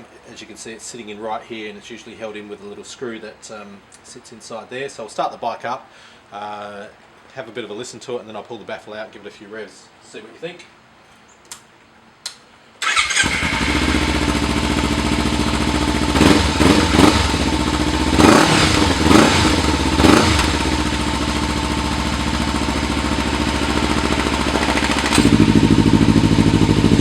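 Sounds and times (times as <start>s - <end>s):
motorcycle engine idling and revving: 12.8s - 27.0s
deep bassy exhaust idle: 13.5s - 27.0s.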